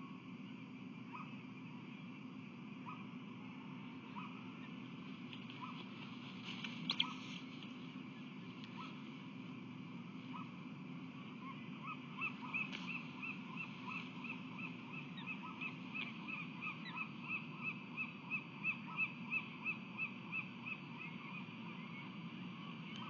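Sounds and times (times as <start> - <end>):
osprey chirping: 5.4 - 9.2, 11.3 - 22.0.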